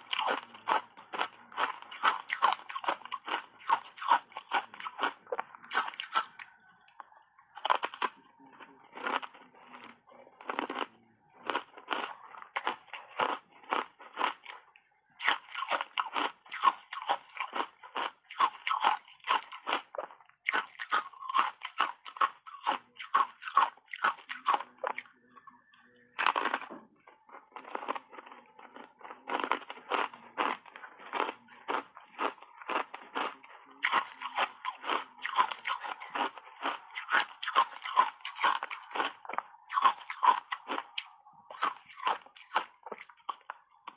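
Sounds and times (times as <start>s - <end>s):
crunching ice chips: 0.0s - 6.6s, 7.5s - 8.2s, 9.0s - 25.1s, 26.2s - 26.7s, 27.3s - 43.9s.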